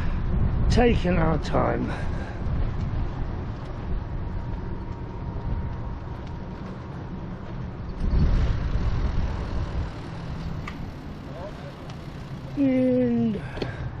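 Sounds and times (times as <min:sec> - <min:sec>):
bicycle road noise: 0:00.0 - 0:14.0
wind rumble on microphone: 0:00.0 - 0:14.0.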